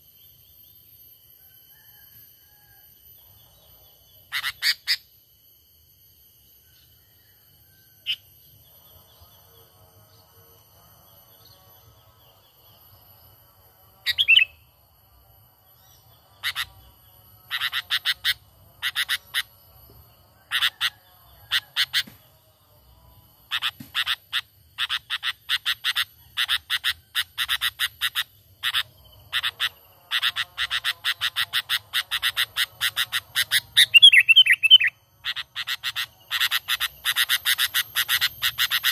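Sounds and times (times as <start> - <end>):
bulbul calls: 4.3 - 5.0, 14.1 - 14.6, 16.4 - 16.8, 17.5 - 19.5, 20.4 - 22.2, 23.5 - 38.9.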